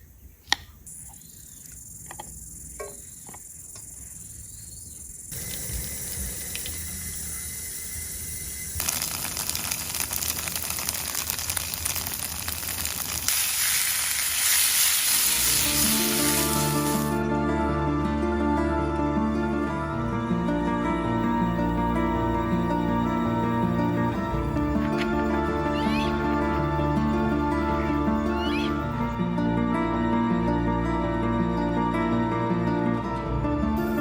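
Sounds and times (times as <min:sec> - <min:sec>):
steady hiss: 0:00.6 - 0:17.2.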